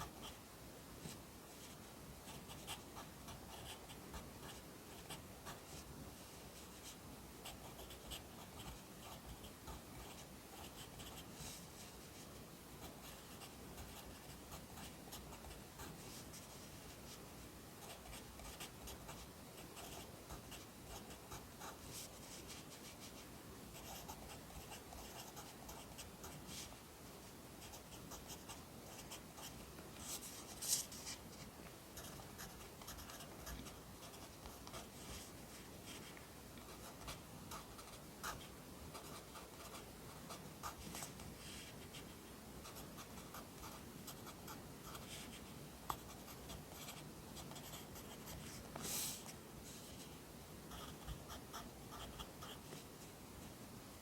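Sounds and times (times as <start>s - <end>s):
pencil scratching on paper: 17.8s - 23.2s, 27.6s - 31.2s, 42.6s - 49.2s.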